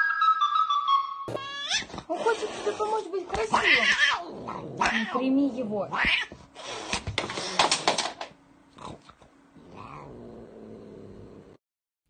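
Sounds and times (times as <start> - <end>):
cat growling and yowling: 1.3 - 2.0, 3.3 - 5.3, 8.8 - 11.6.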